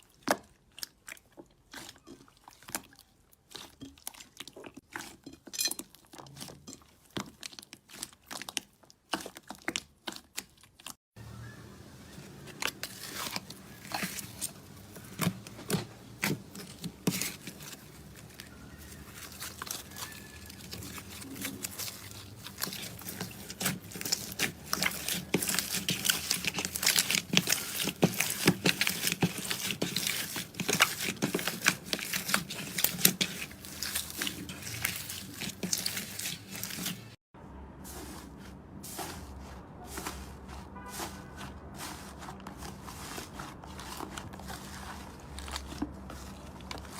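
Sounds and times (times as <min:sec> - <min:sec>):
slime crackling and popping: 0:12.5 - 0:37.2.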